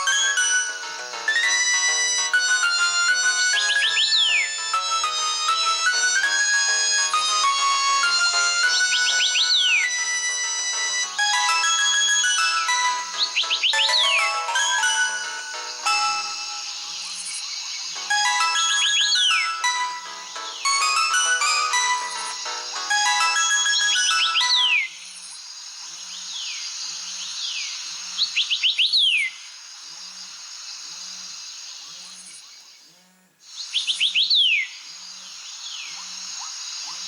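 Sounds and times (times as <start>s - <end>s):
mobile phone ringtone melody: 0.0s - 17.3s, 18.0s - 24.9s
steady hiss: 33.4s - 37.0s.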